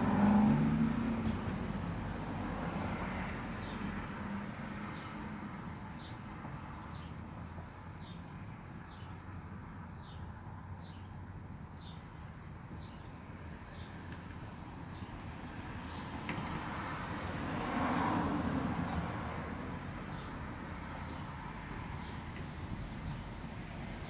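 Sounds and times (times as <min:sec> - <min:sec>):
road traffic rumble: 0:00.0 - 0:24.0.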